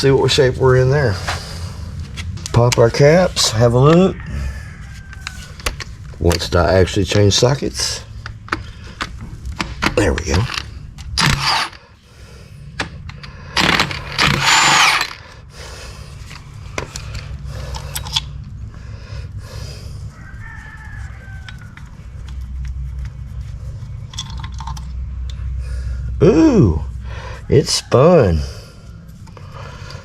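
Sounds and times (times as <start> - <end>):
steady low hum: 0.0 - 30.0
power wrench bursts: 10.3 - 11.8, 13.6 - 15.3
metal tools clicking: 13.0 - 15.2, 17.7 - 18.3.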